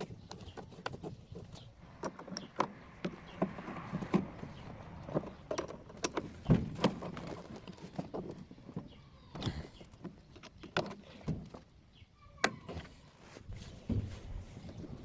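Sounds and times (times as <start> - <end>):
tools and parts clicking and knocking: 0.0 - 11.7.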